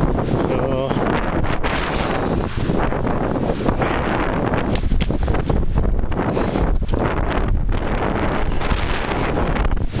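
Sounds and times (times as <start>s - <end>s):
wind blowing across microphone: 0.0s - 10.0s.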